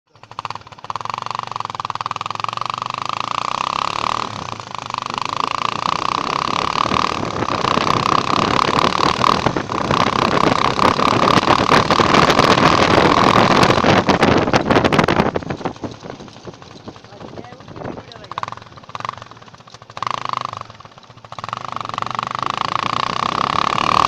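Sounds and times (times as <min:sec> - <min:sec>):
motorcycle engine running: 0:00.1 - 0:24.0.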